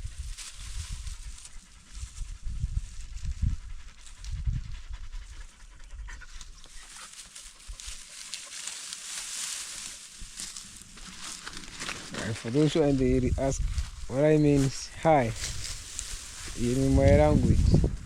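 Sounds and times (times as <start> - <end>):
dog panting: 1.1 - 9.0
low rumbles: 10.2 - 18.0.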